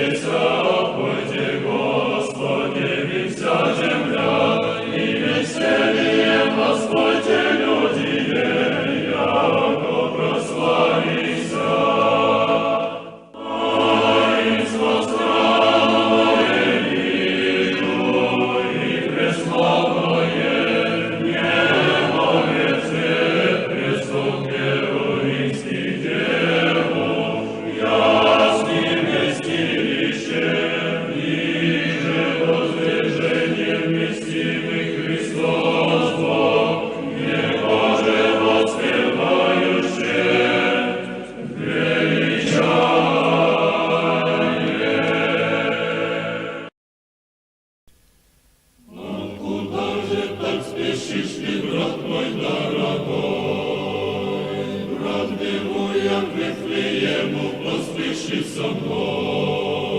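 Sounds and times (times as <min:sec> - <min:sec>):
church choir chanting: 0:00.0 - 0:46.7, 0:48.8 - 0:59.9.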